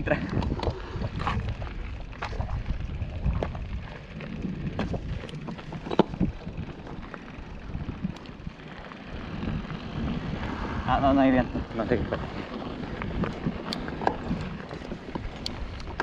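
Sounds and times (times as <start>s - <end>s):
wind rushing over microphone: 0.0s - 16.0s
bike clicks and knocks: 0.1s - 10.2s, 11.8s - 16.0s.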